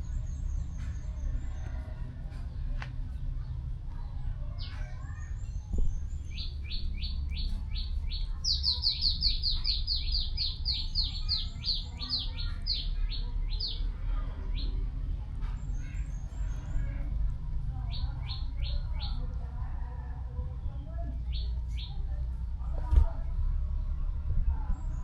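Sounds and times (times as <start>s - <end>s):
low rumble: 0.0s - 25.0s
bird chirping: 5.7s - 13.8s.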